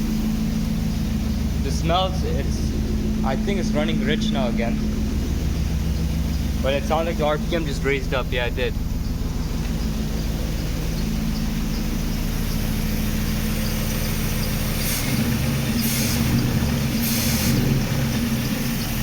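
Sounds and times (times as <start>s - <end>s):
car engine idling and revving: 0.0s - 19.0s
short hiss on throttle blips: 14.6s - 18.4s.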